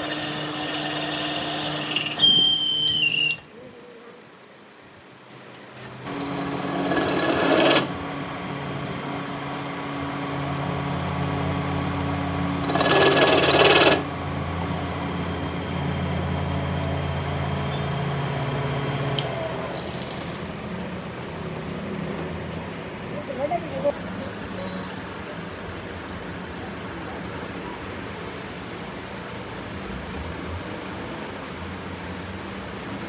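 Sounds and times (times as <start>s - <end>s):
workshop machine humming: 0.0s - 3.4s, 5.9s - 24.2s.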